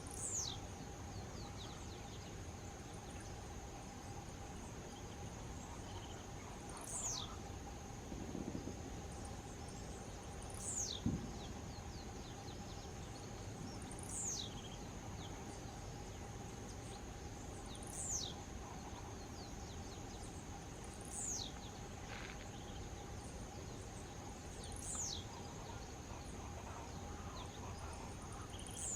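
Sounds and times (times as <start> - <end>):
high insect drone: 0.0 - 28.9
low thump: 10.9 - 11.5.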